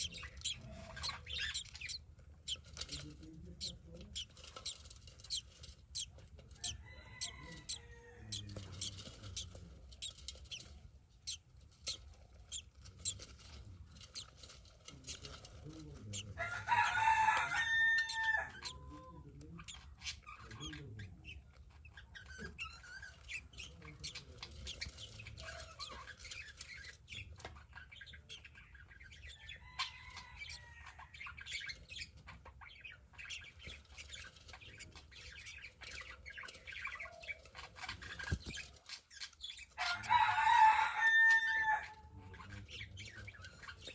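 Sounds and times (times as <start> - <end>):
rooster crowing: 6.6 - 8.6, 16.4 - 18.8, 39.8 - 42.0.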